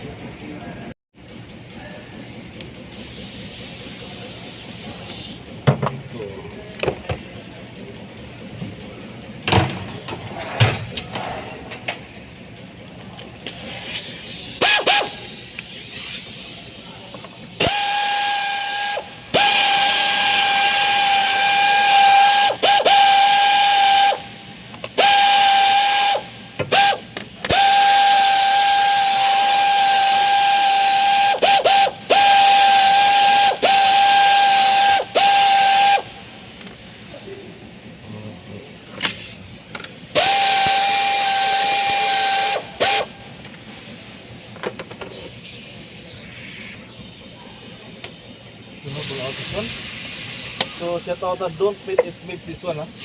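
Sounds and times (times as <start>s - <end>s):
air blow gun hissing: 2.9s - 5.5s, 13.5s - 37.2s, 39.0s - 44.4s, 45.1s - 53.0s.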